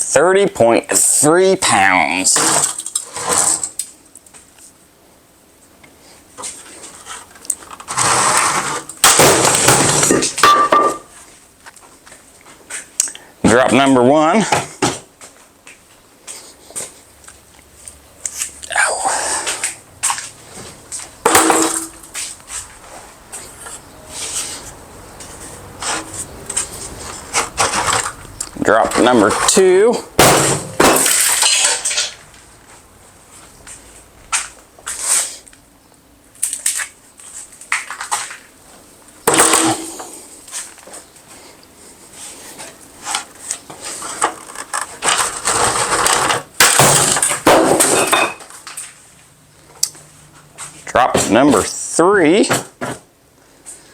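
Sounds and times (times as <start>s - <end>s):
hard objects scraping and rattling: 2.2s - 4.0s, 6.4s - 11.3s, 19.4s - 22.7s, 23.3s - 32.4s, 39.3s - 41.0s, 42.2s - 49.0s
metal toolbox crashing: 8.6s - 11.1s, 21.3s - 22.1s, 30.2s - 32.2s, 39.3s - 40.1s, 45.1s - 48.5s
hard objects knocking: 21.3s - 22.0s.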